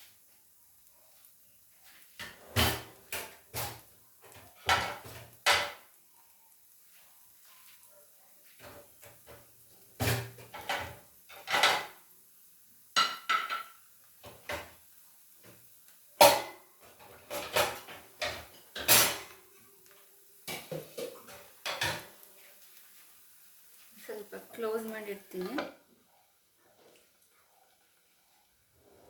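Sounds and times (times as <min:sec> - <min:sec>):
metal utensils clattering: 0:10.0 - 0:11.9, 0:16.2 - 0:19.4, 0:20.5 - 0:22.1.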